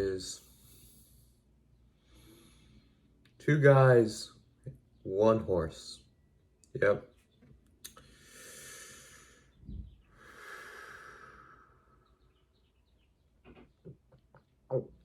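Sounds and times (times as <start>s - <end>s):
person breathing out heavily: 8.0s - 12.0s.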